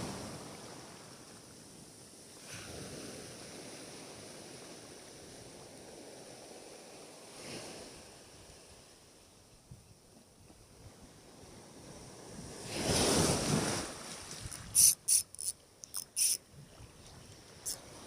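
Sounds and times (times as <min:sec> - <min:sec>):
wave washing on shore: 0:12.2 - 0:15.2
sharp high clicks: 0:14.5 - 0:16.4.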